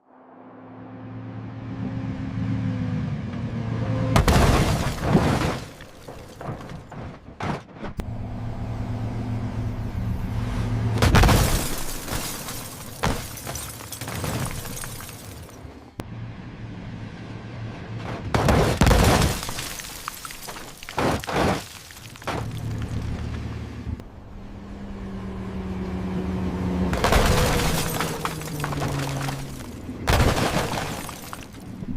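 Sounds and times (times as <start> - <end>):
car engine hum: 8.0 - 21.0, 21.8 - 31.9
crunching and breaking: 18.3 - 23.2, 27.0 - 31.8.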